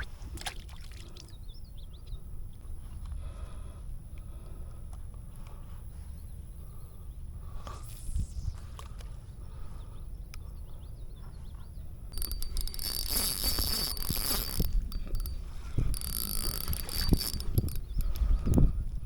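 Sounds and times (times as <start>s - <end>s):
fishing reel whirring: 11.8s - 18.9s.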